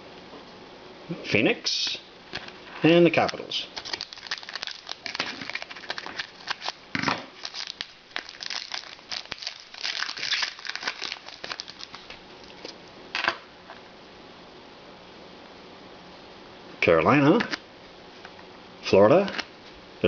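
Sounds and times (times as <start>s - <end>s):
cards being handled: 3.2s - 6.8s, 7.4s - 12.8s
wrapper crinkling and tearing: 3.2s - 12.8s.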